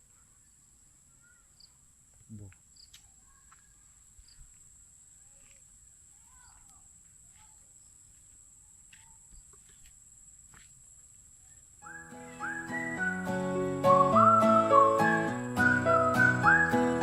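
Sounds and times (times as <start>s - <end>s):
crickets droning: 0.0s - 17.0s
distant birds chirping: 11.4s - 17.0s.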